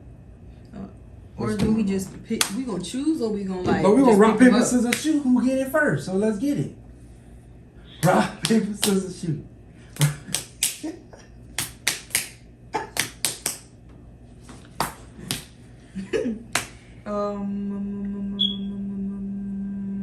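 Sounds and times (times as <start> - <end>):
sharp snaps or claps: 4.9 - 5.2, 8.0 - 9.1, 9.9 - 13.7, 14.4 - 15.6, 16.5 - 16.9
steady hummed note: 14.8 - 20.0.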